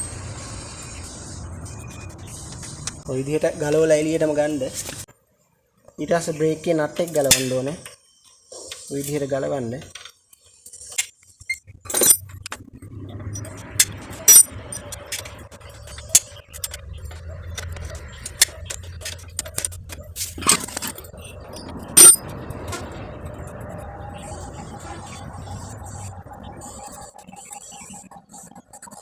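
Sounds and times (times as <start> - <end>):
spanner and metal parts clinking: 9.9 - 12.6, 13.3 - 22.3
metal clanks: 11.6 - 12.6, 13.4 - 22.3.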